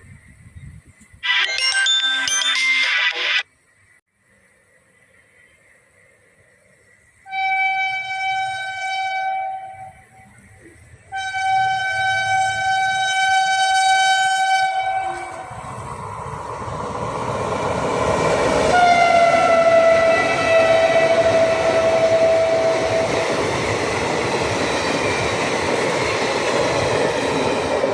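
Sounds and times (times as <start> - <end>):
train wheels on track: 4.4 - 27.9
train horn blasts: 7.2 - 10.2, 11.1 - 15.6, 18.7 - 23.2.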